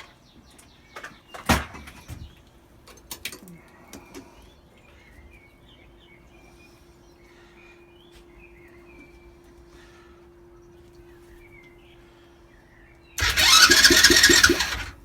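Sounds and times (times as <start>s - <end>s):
birds chirping: 3.5s - 15.0s
faint steady hum: 3.5s - 15.0s.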